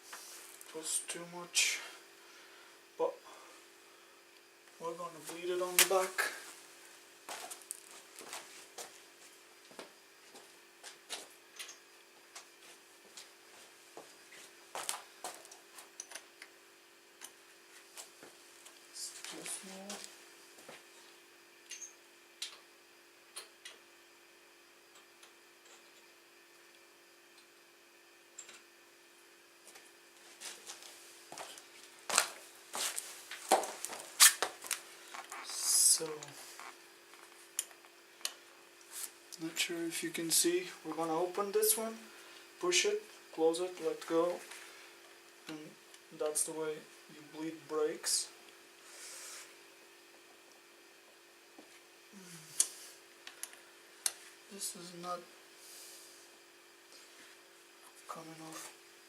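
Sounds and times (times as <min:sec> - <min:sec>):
faint steady hum: 0:00.0 - 0:59.0
tools clicking and knocking: 0:21.7 - 0:22.6.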